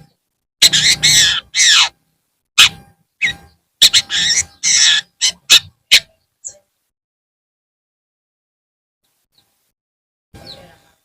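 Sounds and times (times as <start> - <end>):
bird harsh scratchy calls: 0.6 - 2.0, 2.6 - 6.6.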